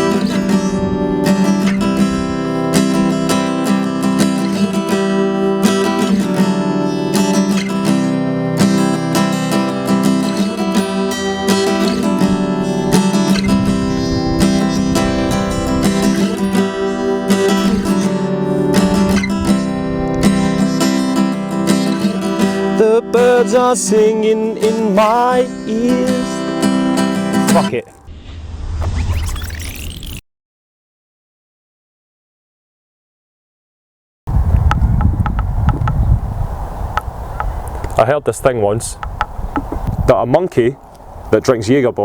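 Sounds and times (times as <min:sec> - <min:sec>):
acoustic guitar strumming chords: 0:00.0 - 0:28.1.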